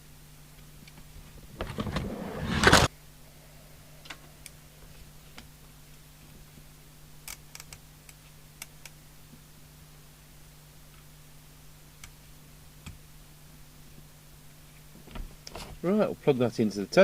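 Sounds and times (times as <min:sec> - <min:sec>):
steady low hum: 0:00.0 - 0:07.3.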